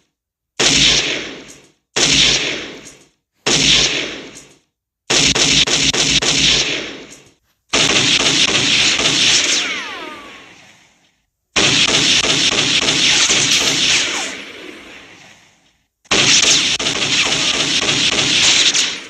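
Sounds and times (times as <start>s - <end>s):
single gunshots with echo: 0.6s - 4.4s, 7.7s - 10.8s, 11.6s - 19.0s
automatic gunfire bursts: 7.7s - 10.7s, 11.6s - 15.4s, 16.1s - 19.0s.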